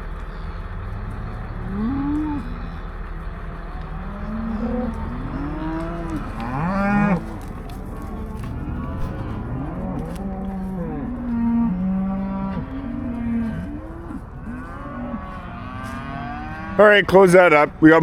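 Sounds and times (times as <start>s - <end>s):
cattle mooing: 0.0s - 18.0s.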